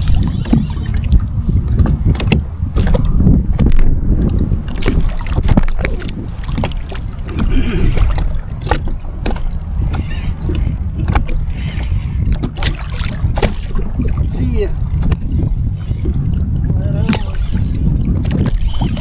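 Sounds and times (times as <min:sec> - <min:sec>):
water sloshing against kayak: 0:00.0 - 0:19.0
wind rumbling on microphone: 0:00.0 - 0:19.0
sharp clicks and knocks: 0:04.3 - 0:19.0
thin high whine: 0:06.3 - 0:13.0.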